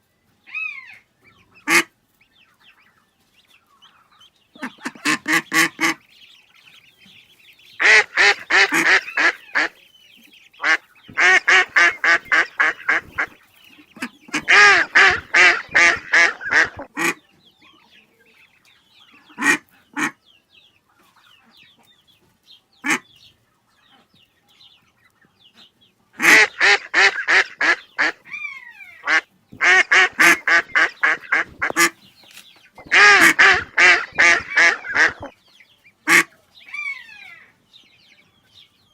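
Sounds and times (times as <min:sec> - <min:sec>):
faint high bird calls: 0:00.4 - 0:01.8, 0:36.1 - 0:37.6
ducks quacking rapidly: 0:01.6 - 0:01.9, 0:04.5 - 0:09.8, 0:10.5 - 0:17.3, 0:19.1 - 0:20.2, 0:22.8 - 0:23.2, 0:25.6 - 0:32.1, 0:32.8 - 0:35.3, 0:36.0 - 0:36.4.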